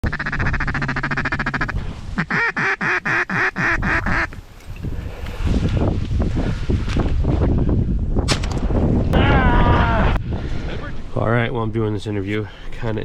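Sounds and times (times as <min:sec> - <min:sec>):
wind rumble on microphone: 0:00.0 - 0:02.2, 0:03.3 - 0:12.0
duck quacking: 0:00.0 - 0:04.3.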